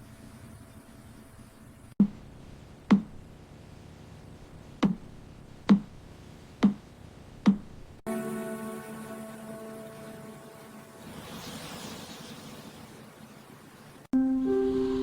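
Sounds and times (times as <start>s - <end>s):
held synthesizer tones: 8.1s - 11.6s, 14.2s - 15.0s.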